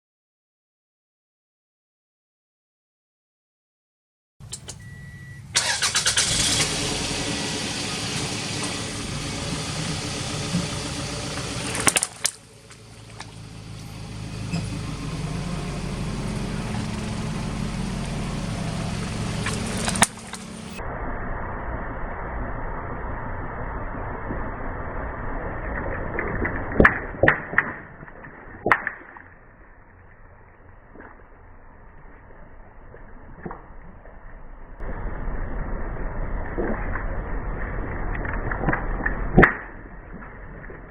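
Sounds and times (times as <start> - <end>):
car engine running: 4.4 - 27.0
short sharp crack: 11.6 - 12.5.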